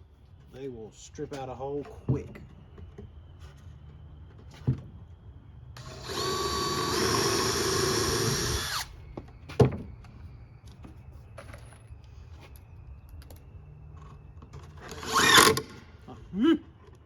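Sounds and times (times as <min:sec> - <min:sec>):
impact driver whining: 0:05.8 - 0:08.9, 0:14.8 - 0:15.7.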